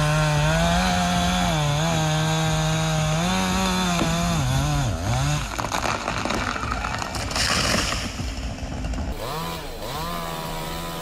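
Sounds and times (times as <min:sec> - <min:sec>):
chainsaw cutting: 0:00.0 - 0:11.0
rapid crackling and snapping: 0:05.1 - 0:09.2.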